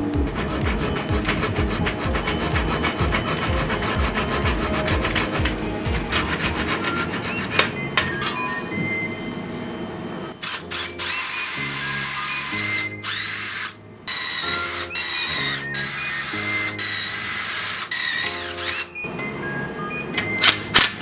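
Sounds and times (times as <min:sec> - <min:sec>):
background music: 0:00.0 - 0:09.5, 0:10.3 - 0:21.0
power drill whining in bursts: 0:10.4 - 0:19.1.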